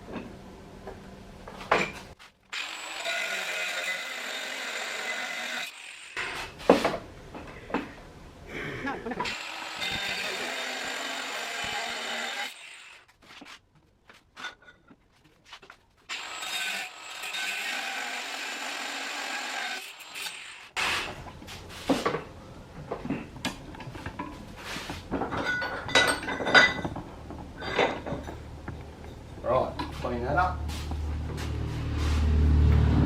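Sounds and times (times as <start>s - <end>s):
power tool cutting metal: 2.5s - 6.4s, 9.2s - 13.0s, 16.1s - 21.0s.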